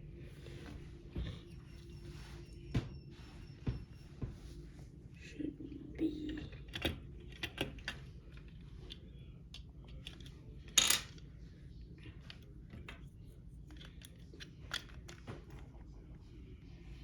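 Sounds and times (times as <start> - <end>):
plastic parts clattering: 10.1 - 11.2.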